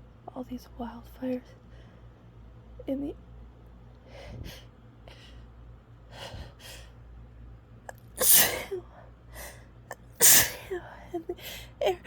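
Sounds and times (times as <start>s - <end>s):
woman sneezing: 8.2s - 8.8s, 9.9s - 10.8s.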